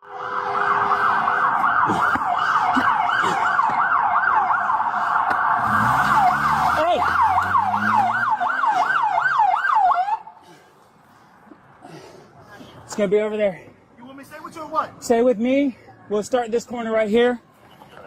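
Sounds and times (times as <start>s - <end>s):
police siren yelping: 0.0s - 10.3s.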